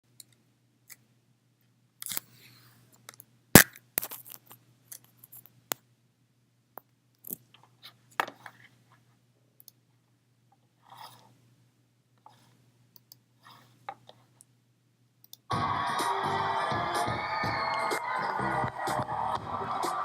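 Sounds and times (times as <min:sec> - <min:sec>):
small clicks and crunches: 0:03.0 - 0:05.8
loud music: 0:15.5 - 0:20.0.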